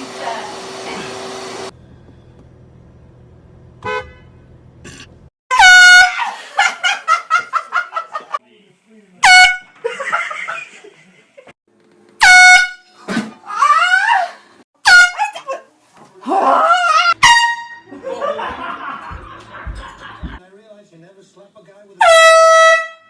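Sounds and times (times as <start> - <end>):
air horn blasts: 3.8 - 4.4, 5.5 - 6.2, 9.2 - 9.7, 12.2 - 13.0, 14.8 - 15.2, 17.2 - 18.0, 22.0 - 23.0
people laughing: 6.2 - 8.4, 9.8 - 11.5, 17.9 - 20.4.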